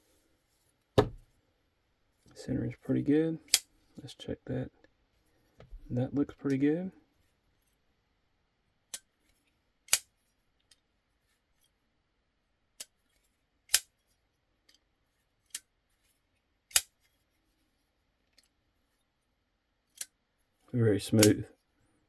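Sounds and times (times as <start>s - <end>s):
folding knife blade snapping: 9.9s - 10.1s.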